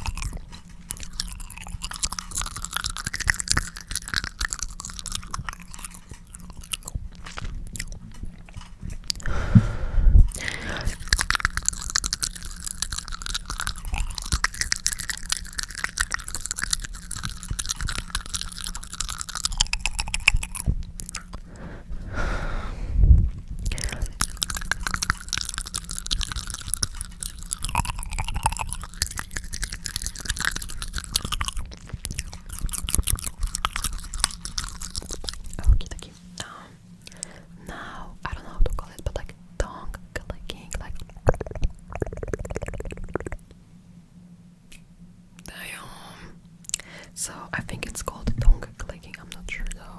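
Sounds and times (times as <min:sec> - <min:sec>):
wet mouth sounds: 0:00.0 - 0:43.6
puff of breath: 0:09.2 - 0:11.0, 0:21.4 - 0:24.2, 0:46.8 - 0:47.2.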